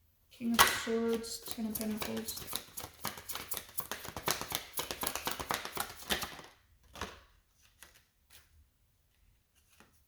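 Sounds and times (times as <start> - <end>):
cards shuffling: 1.4 - 8.6.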